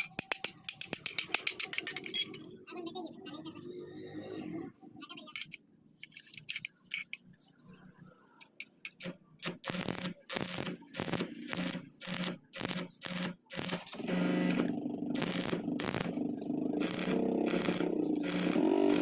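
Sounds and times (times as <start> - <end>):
regular scraping strokes: 5.4 - 7.3.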